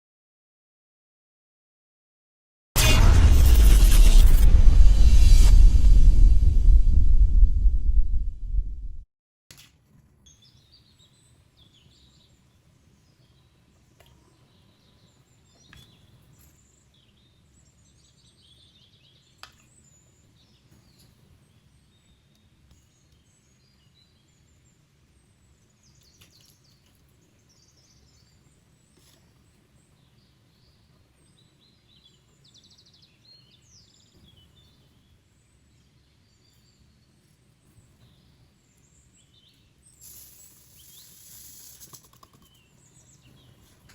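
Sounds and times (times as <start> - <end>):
small birds chirping: 10.3 - 43.9.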